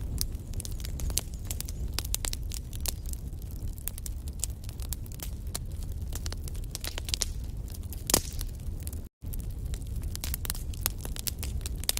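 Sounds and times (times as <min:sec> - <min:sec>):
wood fire crackling: 0:00.0 - 0:11.9.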